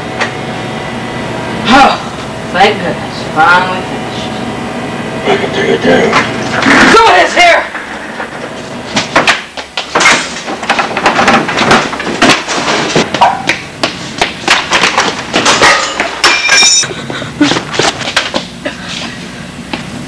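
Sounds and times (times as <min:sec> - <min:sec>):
loud knocks and thuds: 0:08.9 - 0:13.2
ringing metallic tone: 0:15.7 - 0:16.9.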